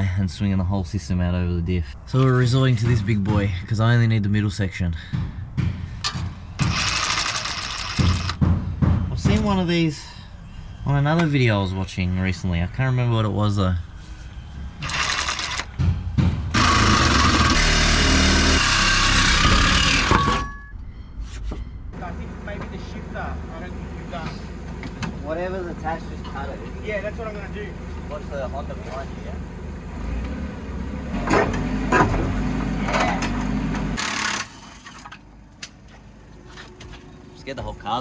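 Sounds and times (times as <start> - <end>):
power tool cutting steel pipe: 6.6 - 8.4, 14.8 - 15.7, 16.5 - 20.6.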